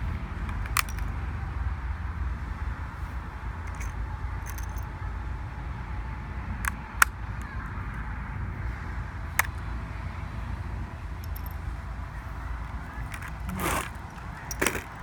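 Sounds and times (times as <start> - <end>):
keycaps clicking off keyboard: 13.0 - 15.0.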